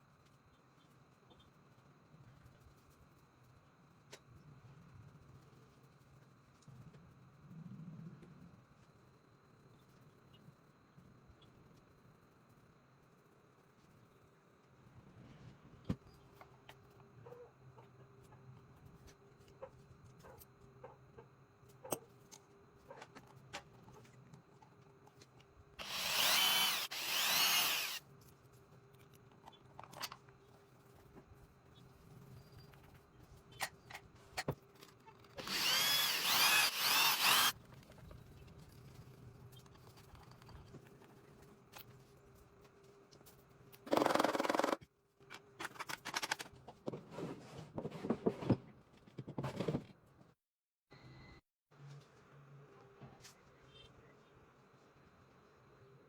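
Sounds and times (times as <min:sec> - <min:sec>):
power drill running: 0:25.8 - 0:28.0, 0:35.4 - 0:37.5
light knocks and scraping: 0:46.7 - 0:50.0.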